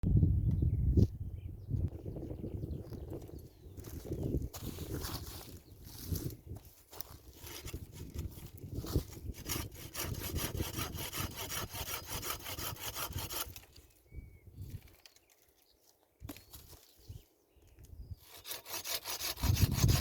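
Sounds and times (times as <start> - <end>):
hand saw cutting wood: 7.2 - 13.8, 18.2 - 20.0.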